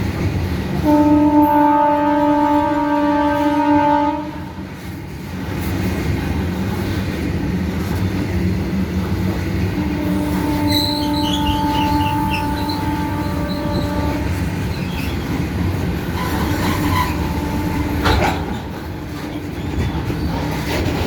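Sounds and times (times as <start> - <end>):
goods train rumbling past: 0.0 - 21.0
locomotive horn: 0.8 - 4.7, 9.7 - 14.8, 16.1 - 18.5.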